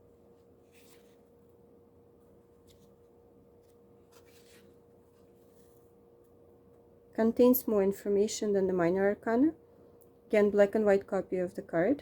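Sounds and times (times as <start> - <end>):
faint steady hum: 0.0 - 12.0
book pages turning: 0.4 - 1.4, 2.5 - 6.0.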